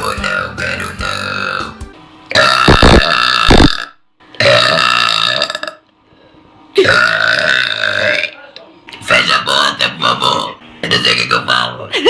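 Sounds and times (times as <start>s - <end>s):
person burping loudly: 0.0s - 5.8s, 6.8s - 8.4s.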